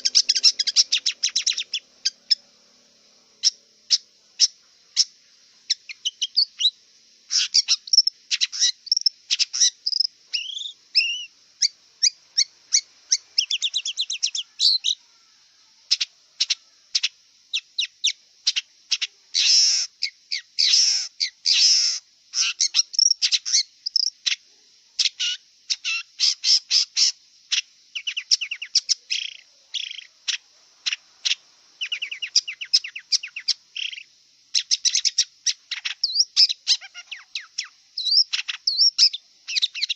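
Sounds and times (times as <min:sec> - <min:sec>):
bird singing chirps and trills: 0:00.0 - 0:02.5, 0:05.7 - 0:11.3, 0:13.1 - 0:15.1, 0:22.4 - 0:24.1, 0:27.5 - 0:39.9.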